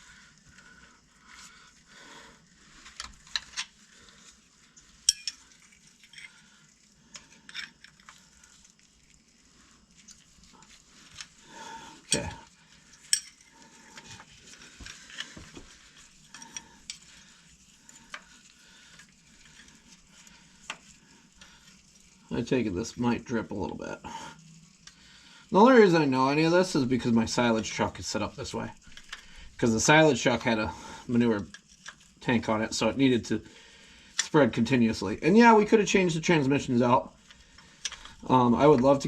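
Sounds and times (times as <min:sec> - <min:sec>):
wrench and bolts clinking: 0:05.0 - 0:06.4, 0:13.0 - 0:14.2.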